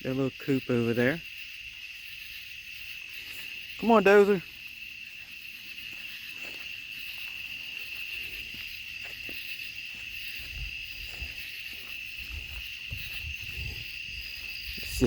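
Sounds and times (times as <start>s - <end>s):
night insects trilling: 0.0s - 15.0s
faint low thuds: 10.3s - 15.0s.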